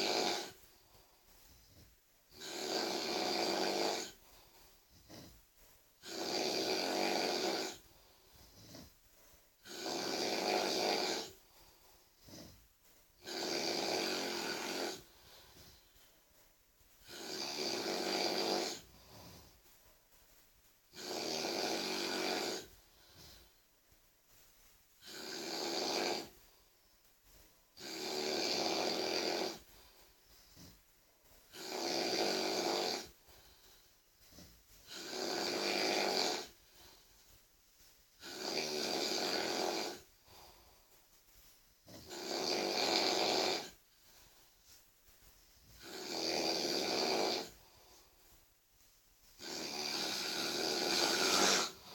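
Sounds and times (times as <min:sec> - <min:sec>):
person snoring loudly: 0:00.0 - 0:00.6, 0:02.3 - 0:04.2, 0:06.0 - 0:07.9, 0:09.6 - 0:11.4, 0:13.2 - 0:15.1, 0:17.0 - 0:19.4, 0:20.9 - 0:23.4, 0:25.0 - 0:26.4, 0:27.8 - 0:29.7, 0:31.5 - 0:33.2, 0:34.3 - 0:36.6, 0:38.2 - 0:40.5, 0:41.9 - 0:43.8, 0:45.8 - 0:47.7, 0:49.4 - 0:51.9
quiet breathing: 0:00.0 - 0:51.9.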